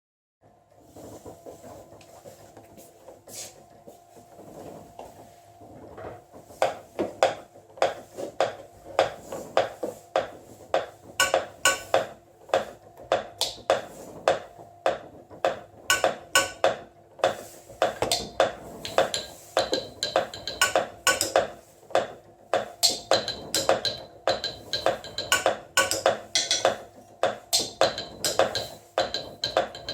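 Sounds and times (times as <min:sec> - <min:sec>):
mechanical knocks and clicks: 0:06.6 - 0:29.9.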